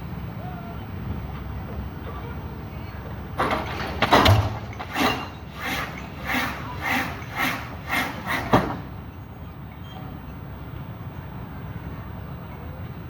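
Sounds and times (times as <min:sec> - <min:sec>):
excavator heavy knocks: 0:03.1 - 0:09.1.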